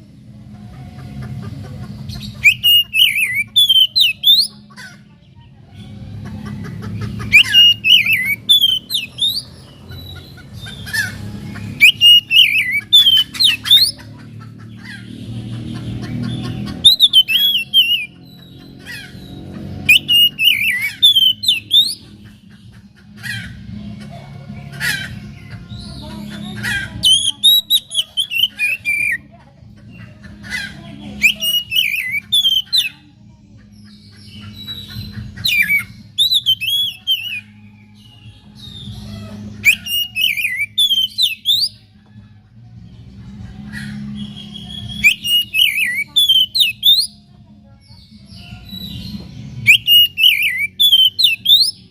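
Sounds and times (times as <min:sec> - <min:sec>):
bird singing whistled phrases: 0:02.4 - 0:04.6, 0:07.3 - 0:09.5, 0:11.8 - 0:13.9, 0:16.8 - 0:18.2, 0:19.9 - 0:22.0, 0:27.0 - 0:29.2, 0:31.2 - 0:33.0, 0:35.5 - 0:37.5, 0:39.6 - 0:41.8, 0:44.2 - 0:47.2, 0:48.7 - 0:51.8.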